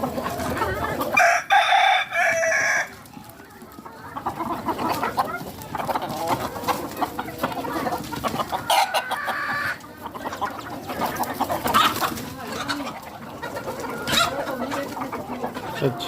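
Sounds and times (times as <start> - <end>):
hens clucking: 0.0 - 16.0
rooster crowing: 1.2 - 2.9.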